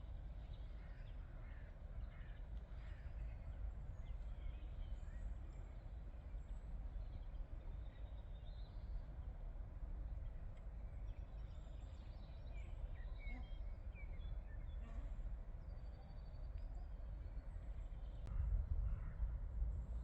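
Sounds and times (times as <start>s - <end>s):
low rumble: 18.3s - 20.0s.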